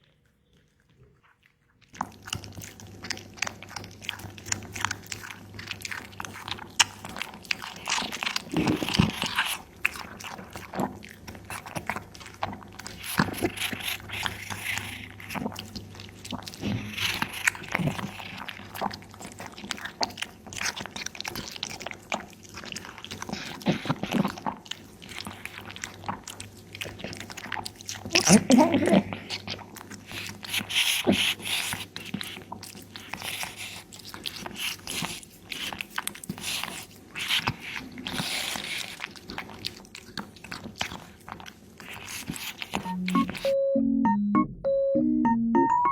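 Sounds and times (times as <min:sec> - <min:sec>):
cat crunching and chewing meat: 0:00.0 - 0:43.5.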